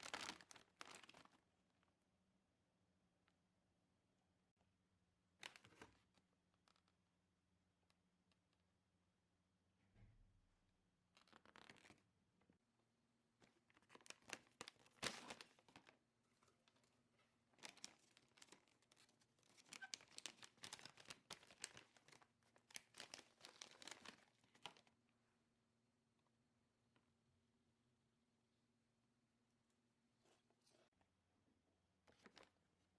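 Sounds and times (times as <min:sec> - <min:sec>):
packaging crinkling and tearing: 0:00.0 - 0:01.4, 0:13.8 - 0:15.9, 0:17.6 - 0:24.9.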